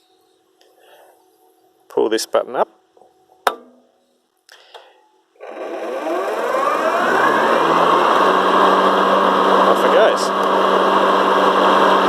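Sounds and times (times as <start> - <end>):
mower blade motors whirring: 5.4 - 12.0.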